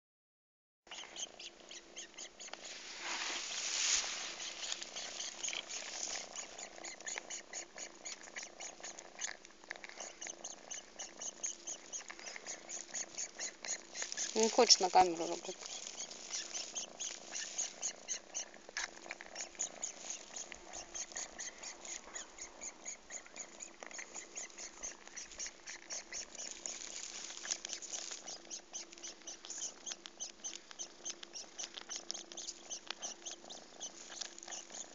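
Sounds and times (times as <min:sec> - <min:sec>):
kitten purring: 0:00.9 - 0:34.9.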